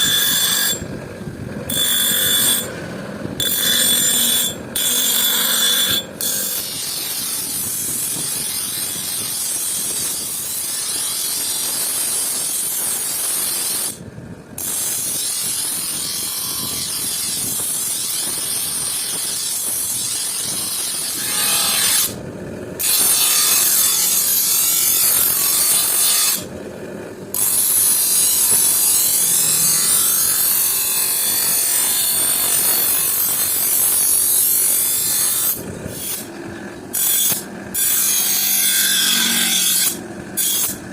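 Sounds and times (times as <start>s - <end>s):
hand tool scraping a knife: 0.0s - 0.8s, 1.7s - 2.7s, 3.4s - 14.0s, 27.3s - 40.8s.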